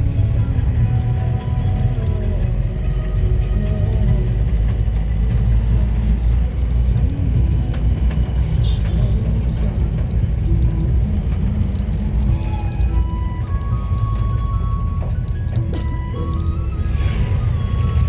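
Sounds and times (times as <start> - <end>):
vehicle rumble: 0.0 - 18.0.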